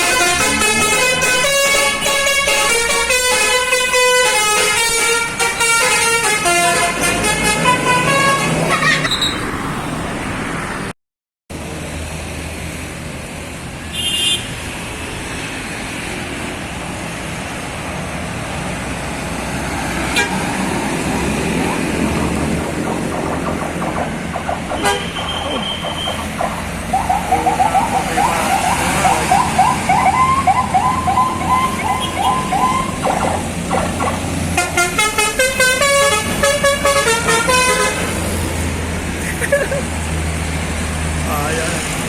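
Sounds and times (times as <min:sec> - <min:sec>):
multi-tone musical air horn: 0:00.0 - 0:08.8, 0:24.8 - 0:26.3, 0:34.6 - 0:38.2
vehicle noise: 0:00.0 - 0:42.0.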